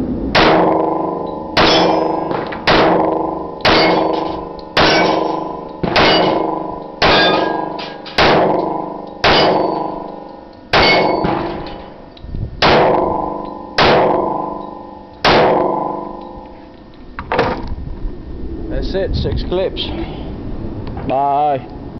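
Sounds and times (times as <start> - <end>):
pistol shots: 0.4 - 11.8, 12.6 - 14.6, 15.2 - 16.2
metallic ring: 0.8 - 2.4, 3.0 - 12.1, 13.0 - 16.8.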